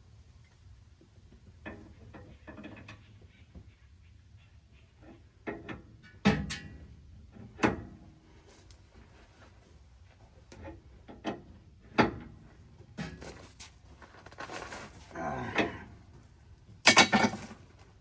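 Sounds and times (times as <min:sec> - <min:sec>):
metal parts clattering: 0:16.8 - 0:17.6
metal tools clanking: 0:16.8 - 0:17.6.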